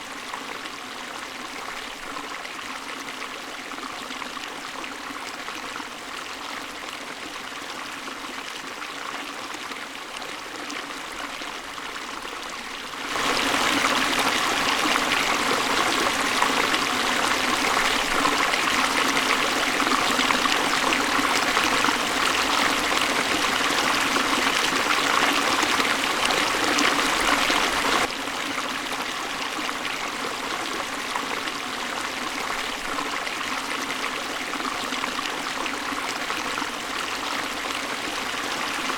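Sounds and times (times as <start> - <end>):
river water rushing: 13.0 - 31.5.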